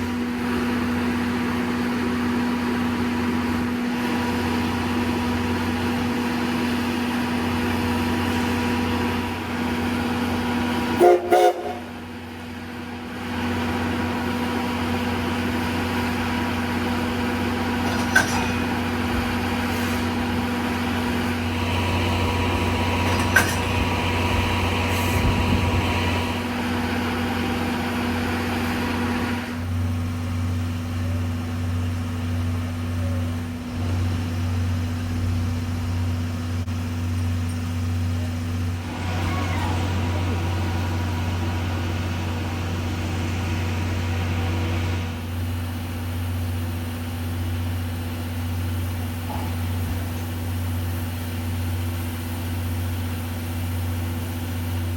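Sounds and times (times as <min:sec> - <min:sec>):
train mechanical hum: 0:00.0 - 0:54.9
train horn toot: 0:10.9 - 0:12.1.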